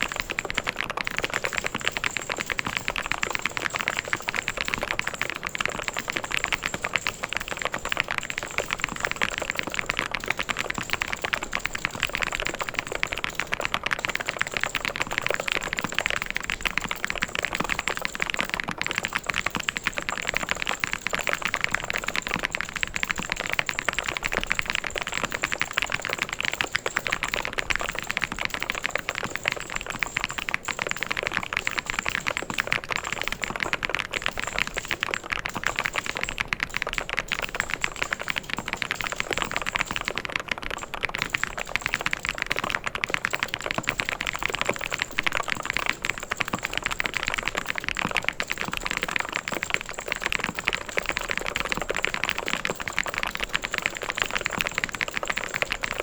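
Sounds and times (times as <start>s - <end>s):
fast mechanical keyboard typing: 0.0s - 56.0s.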